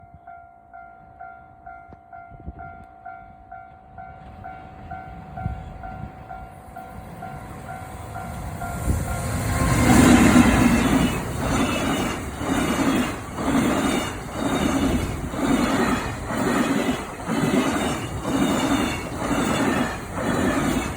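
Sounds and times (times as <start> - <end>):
freight train approaching: 0.0 - 20.9
wheels clattering over rail joints: 8.2 - 20.9.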